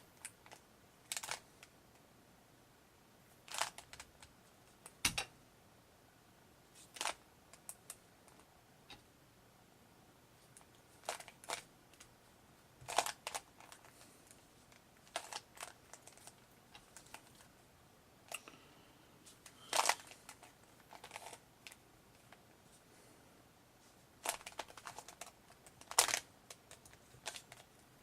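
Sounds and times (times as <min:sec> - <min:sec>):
puzzle cube clicking as turned: 0:19.7 - 0:21.8, 0:24.2 - 0:27.7.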